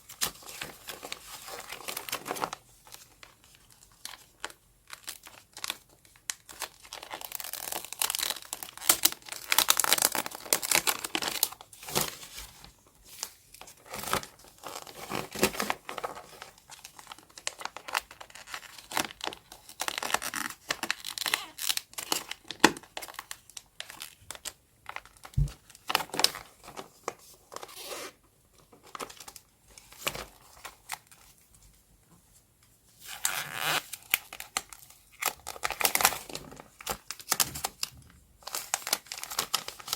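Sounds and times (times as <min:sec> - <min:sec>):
paper rustling and crinkling: 0:00.0 - 0:39.9.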